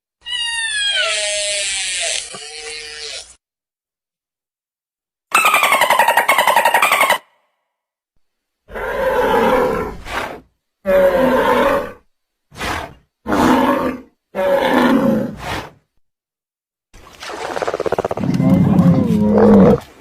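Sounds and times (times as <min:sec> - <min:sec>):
creature roars: 0:08.7 - 0:12.0, 0:12.6 - 0:15.6, 0:17.9 - 0:20.0.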